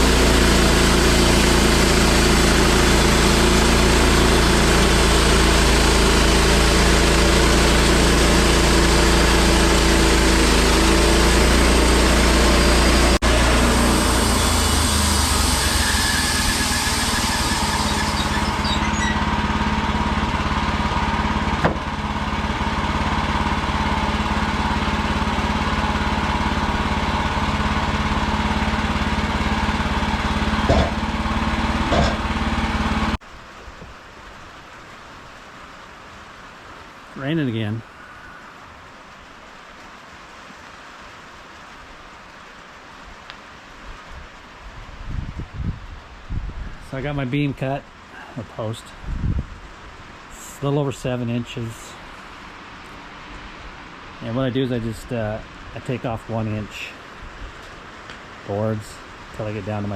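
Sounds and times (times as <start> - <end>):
sawmill engine running: 0.0 - 33.2.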